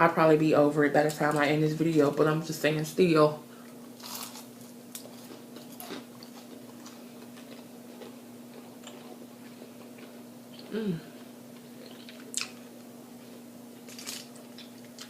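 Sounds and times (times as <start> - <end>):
steady hum: 0.0 - 15.0
person chewing: 4.0 - 15.0.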